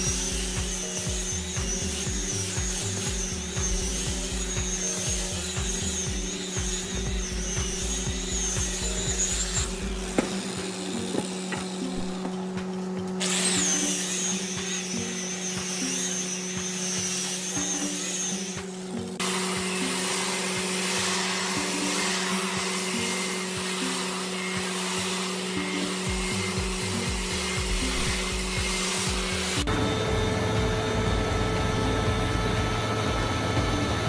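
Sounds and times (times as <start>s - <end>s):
background music: 0.0s - 34.0s
electric power tool whining: 0.0s - 34.0s.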